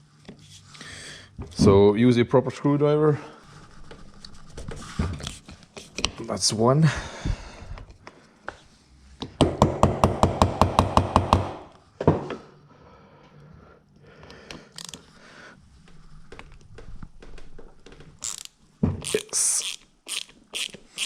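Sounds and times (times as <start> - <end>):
hand tool clicking: 18.2 - 21.0.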